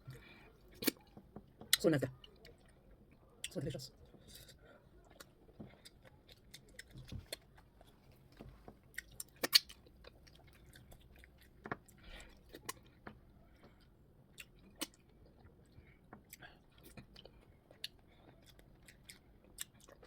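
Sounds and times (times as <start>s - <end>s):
person chewing food: 0.0s - 20.0s
wet mouth smacks and clicks: 9.0s - 9.8s.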